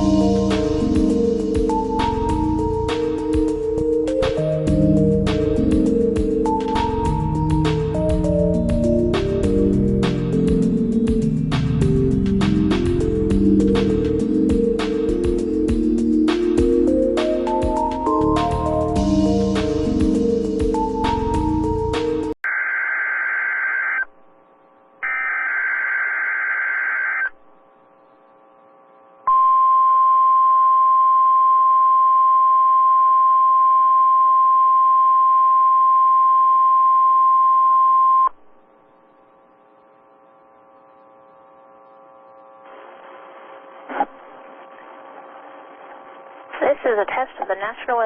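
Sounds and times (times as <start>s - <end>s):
buzzy digital data bursts: 25.0s - 27.2s.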